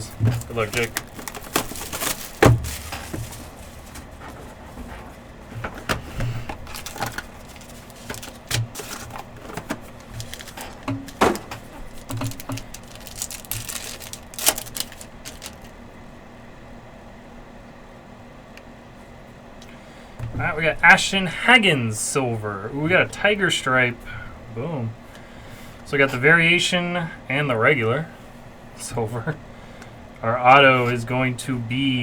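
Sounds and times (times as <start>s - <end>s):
cardboard and plastic rustling: 0.0s - 15.8s.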